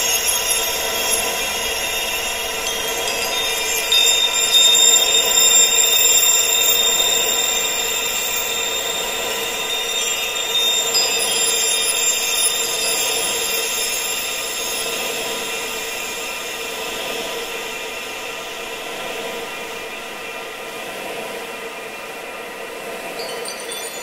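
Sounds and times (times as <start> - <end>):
ringing high tones: 0.0 - 17.8, 23.2 - 24.0.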